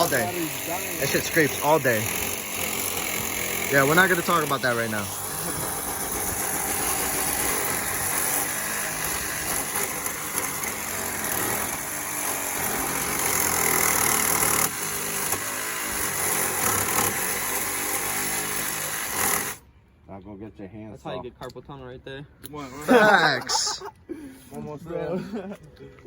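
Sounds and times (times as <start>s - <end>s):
power saw cutting metal: 0.0s - 19.6s.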